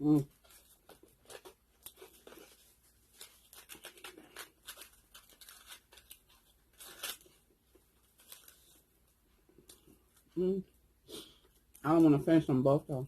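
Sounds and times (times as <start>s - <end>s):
crispy food crackling: 0.0s - 8.8s.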